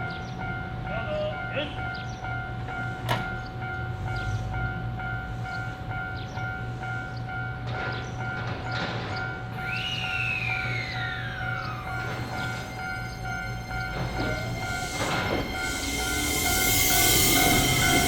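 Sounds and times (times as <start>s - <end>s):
level crossing warning bell: 0.0s - 9.7s, 10.6s - 18.0s
low rail traffic hum: 0.0s - 18.0s
train whine gliding down: 9.5s - 18.0s.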